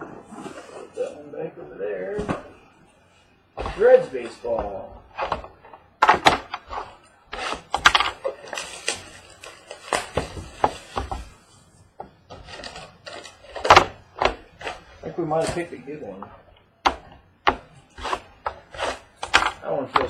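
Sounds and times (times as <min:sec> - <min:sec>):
cardboard boxes knocking and scraping: 0:02.1 - 0:02.6, 0:03.6 - 0:11.4.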